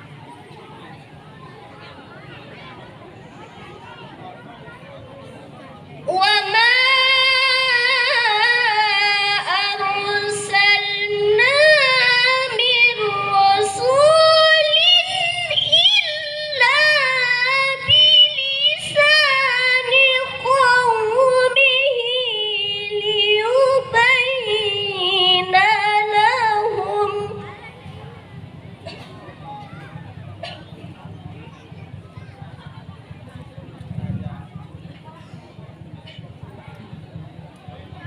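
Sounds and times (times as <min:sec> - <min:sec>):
woman reciting melodically: 0:06.0 - 0:27.8.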